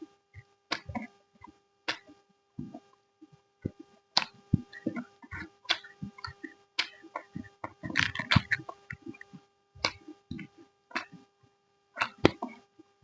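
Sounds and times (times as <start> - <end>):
faint steady hum: 0.0 - 13.0
crunchy chewing: 3.6 - 11.2, 12.0 - 12.6.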